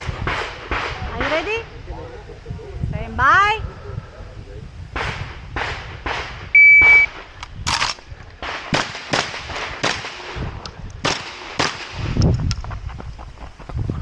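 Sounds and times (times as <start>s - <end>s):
shotgun shots: 5.0s - 10.4s, 11.0s - 12.1s
shot timer beep: 6.6s - 7.1s.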